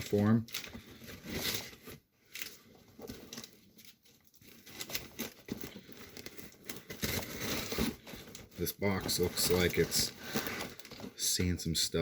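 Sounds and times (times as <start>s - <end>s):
cardboard box rustling and tearing: 3.0s - 10.2s.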